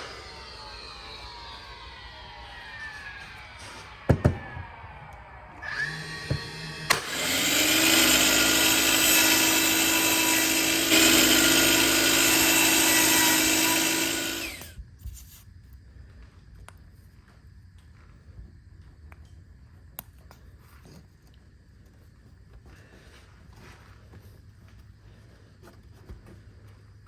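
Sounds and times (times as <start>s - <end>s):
power tool spinning: 0.0s - 4.1s, 5.6s - 14.8s.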